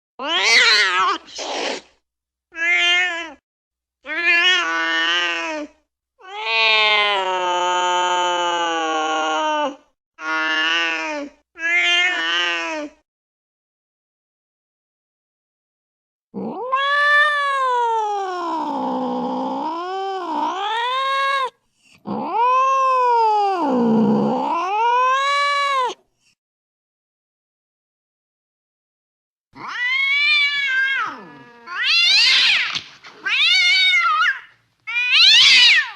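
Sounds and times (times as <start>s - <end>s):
cat yowling: 0.2s - 1.4s, 2.6s - 3.4s, 6.2s - 12.8s, 16.4s - 21.5s, 22.1s - 26.0s, 29.6s - 35.9s.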